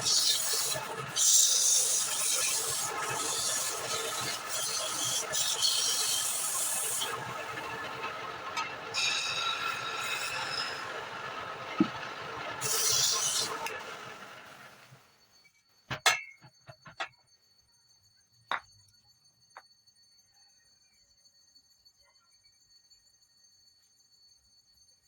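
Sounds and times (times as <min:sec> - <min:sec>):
wood lathe running: 0:00.0 - 0:15.0
sharp knocks and clinks: 0:15.9 - 0:17.2.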